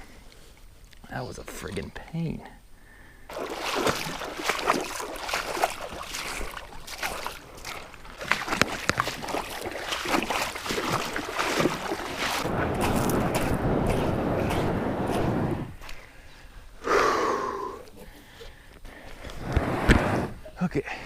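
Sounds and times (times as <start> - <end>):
gear knocking in a kayak: 6.9 - 15.3.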